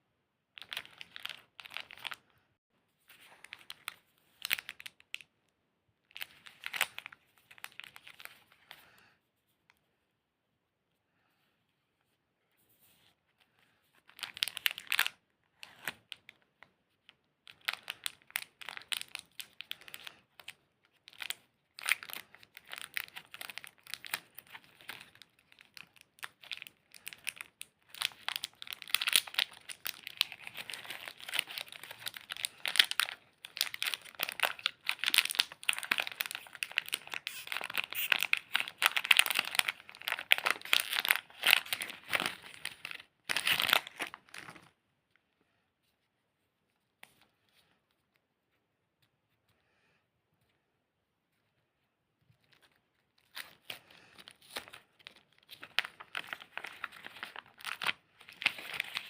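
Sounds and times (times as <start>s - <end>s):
chocolate wrapper crinkling and tearing: 0.5s - 2.3s, 3.2s - 5.3s, 6.1s - 8.6s, 14.0s - 44.8s, 52.4s - 59.0s.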